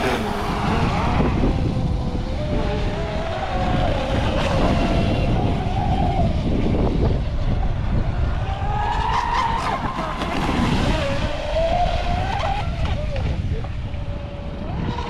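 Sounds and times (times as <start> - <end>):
model boat motor whining: 0.0 - 8.4
steady low rumble: 6.2 - 9.0.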